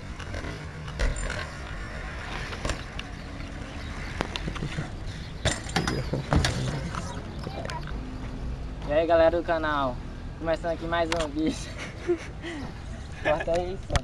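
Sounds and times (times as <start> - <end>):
clicks and knocks from bikes: 0.0 - 3.5, 5.4 - 8.0, 11.0 - 11.3, 13.5 - 14.0.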